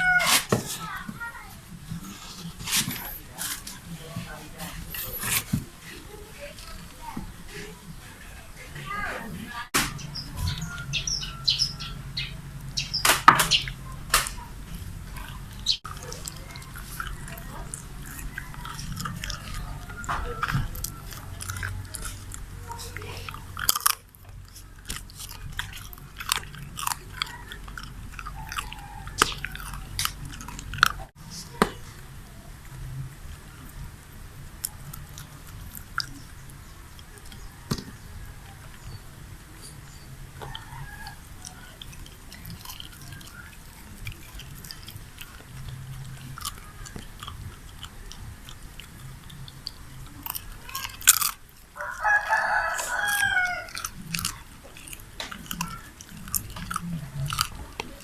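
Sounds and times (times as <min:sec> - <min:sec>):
chewing crisp chicken skin: 0:13.6 - 0:31.2, 0:40.4 - 0:58.0.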